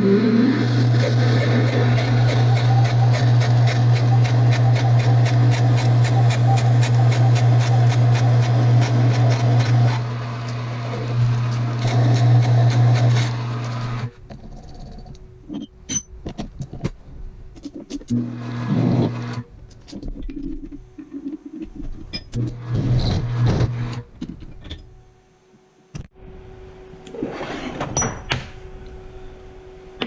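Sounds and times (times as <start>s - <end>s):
machine motor humming and ticking: 0.7s - 15.2s.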